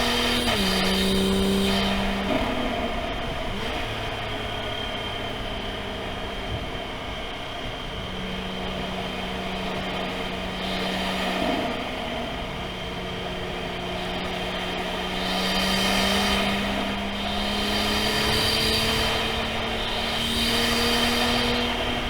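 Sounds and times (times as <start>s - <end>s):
car engine steady note: 0.0s - 22.0s
road noise: 0.0s - 22.0s.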